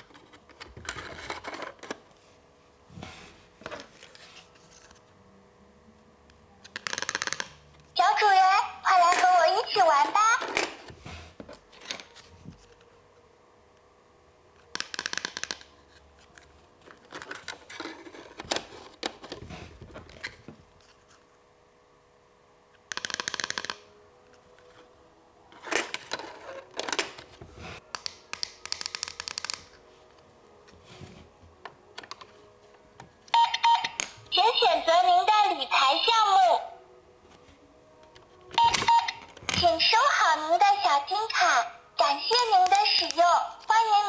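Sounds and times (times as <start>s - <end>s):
plastic toy clicks: 6.7s - 7.6s, 14.7s - 15.7s, 22.9s - 23.9s, 27.9s - 29.8s.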